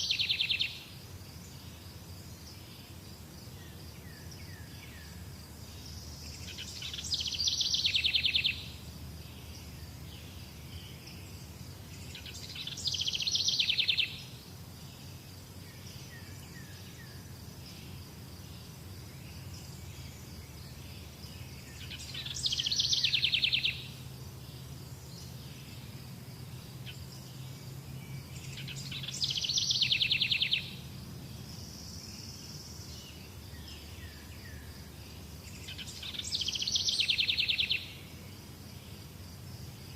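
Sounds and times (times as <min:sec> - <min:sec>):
bird singing fast trill: 0:00.0 - 0:00.9, 0:05.8 - 0:14.4, 0:19.9 - 0:25.8, 0:26.8 - 0:38.2.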